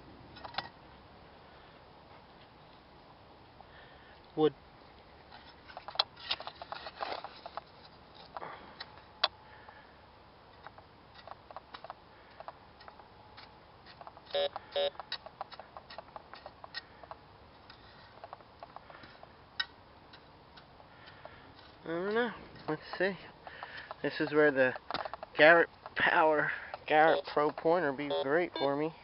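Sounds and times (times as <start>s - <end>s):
digging in loose soil: 4.9s - 9.9s, 10.5s - 28.9s
metal detector beeps: 14.3s - 15.0s, 26.8s - 27.4s, 28.0s - 28.9s.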